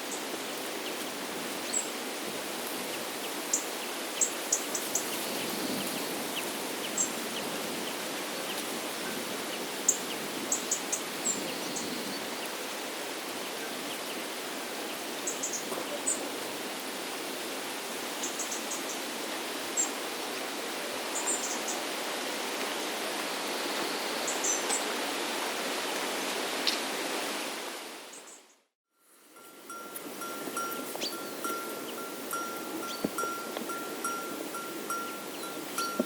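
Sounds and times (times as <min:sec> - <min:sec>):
small birds chirping: 0:02.8 - 0:12.6, 0:13.4 - 0:16.4, 0:30.3 - 0:36.0
stream water rushing: 0:12.2 - 0:28.1, 0:29.6 - 0:36.0.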